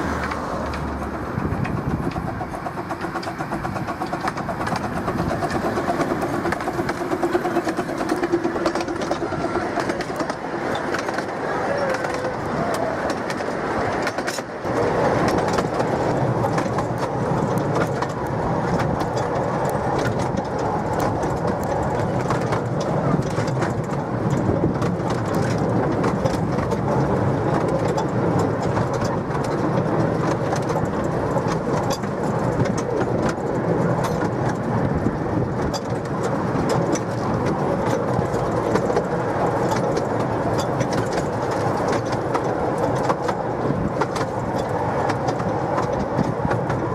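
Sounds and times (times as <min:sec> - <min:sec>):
train wheels rumbling on track: 0:00.0 - 0:46.9.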